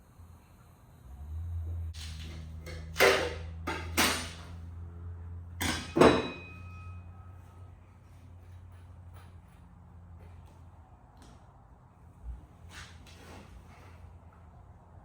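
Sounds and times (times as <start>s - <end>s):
hammer ringing on metal: 5.6s - 7.3s.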